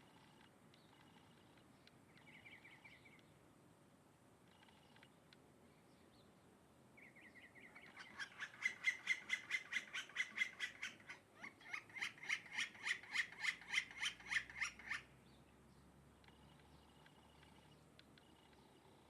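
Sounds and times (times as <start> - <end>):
bird calling harsh repeated notes: 7.8 - 15.1.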